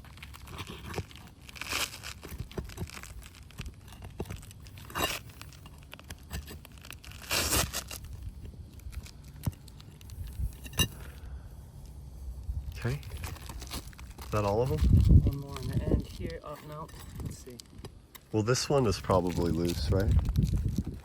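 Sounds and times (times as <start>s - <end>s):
roof shingles scraping and tearing: 0.0s - 11.2s, 12.7s - 21.0s.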